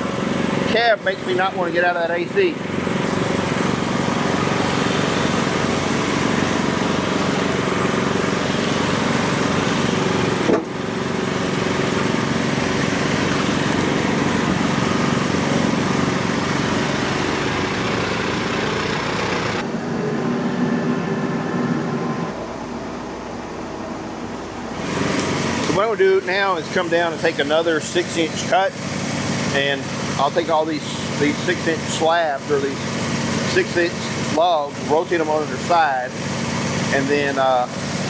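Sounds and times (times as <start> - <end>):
sawmill engine running: 0.0 - 38.0.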